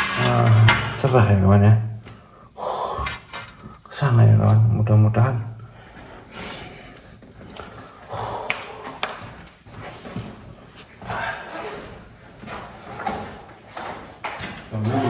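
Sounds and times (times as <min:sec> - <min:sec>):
crickets chirping: 0:00.0 - 0:15.0
scuffing and rustling on floor: 0:05.7 - 0:15.0.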